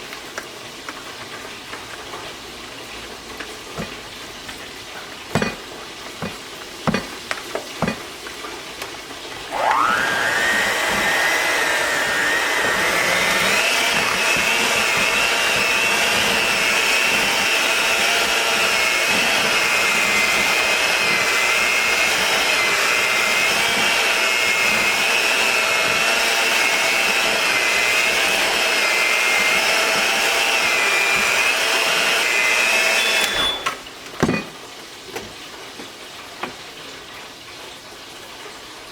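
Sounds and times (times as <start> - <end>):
sharp knocks: 5.3 - 8.1
small electric motor whining: 9.5 - 33.6.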